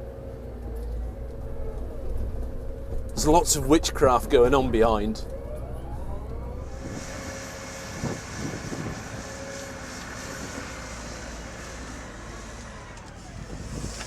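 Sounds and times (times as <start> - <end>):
excavator machine hum: 0.0 - 14.0
thin whine: 5.2 - 14.0.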